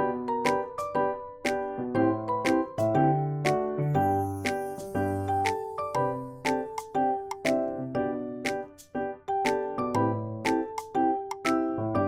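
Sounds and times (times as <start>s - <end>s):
cheerful piano music: 0.0s - 12.0s.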